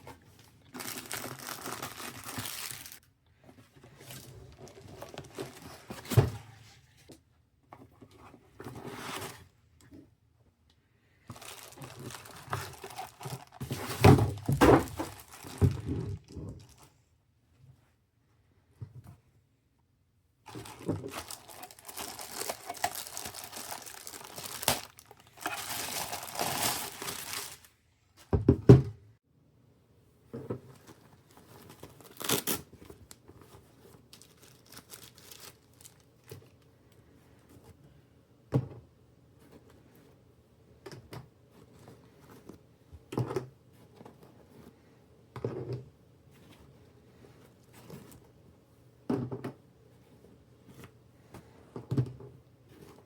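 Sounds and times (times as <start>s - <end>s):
packaging crinkling and tearing: 0.6s - 3.0s, 11.3s - 15.9s, 20.5s - 27.7s, 30.7s - 33.2s, 33.9s - 36.6s.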